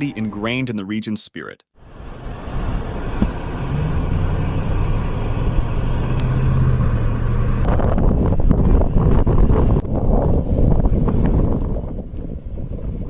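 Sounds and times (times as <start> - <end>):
engine humming: 1.8 - 13.0.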